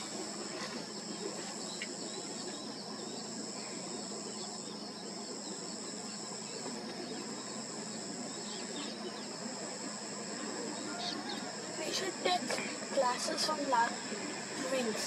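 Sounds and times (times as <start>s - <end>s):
background hiss: 0.0s - 15.0s
faint bird chirps: 0.0s - 15.0s
insects chirping shrill chorus: 0.0s - 15.0s.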